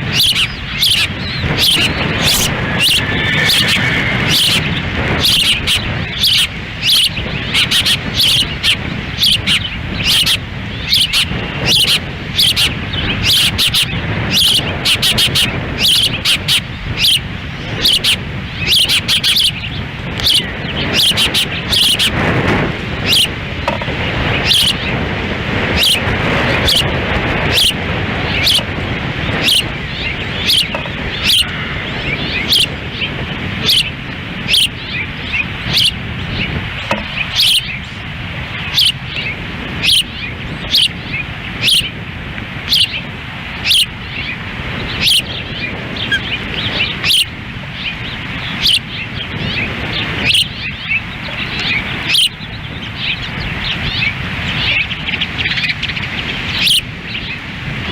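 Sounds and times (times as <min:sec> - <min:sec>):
wind noise on microphone: 0:00.0 - 0:57.9
ospreys whistled chirps: 0:00.1 - 0:22.2, 0:23.0 - 0:23.4, 0:24.4 - 0:25.0, 0:25.7 - 0:28.7, 0:29.3 - 0:38.0, 0:38.6 - 0:42.0, 0:42.7 - 0:43.0, 0:43.6 - 0:44.3, 0:44.9 - 0:57.4.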